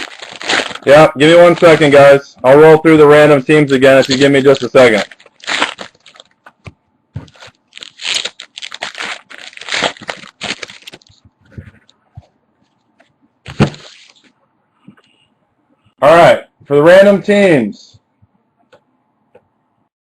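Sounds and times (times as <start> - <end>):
packaging crinkling: 0.0 - 2.1, 3.5 - 11.4, 13.5 - 14.3.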